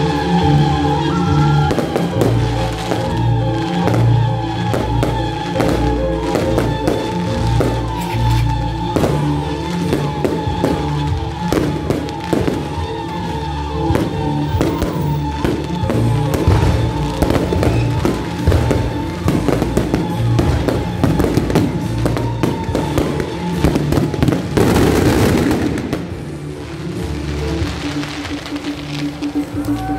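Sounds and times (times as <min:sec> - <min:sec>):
music playing: 0:00.0 - 0:29.9
fireworks bangs: 0:00.6 - 0:29.9
fireworks crackling burst: 0:00.6 - 0:29.9.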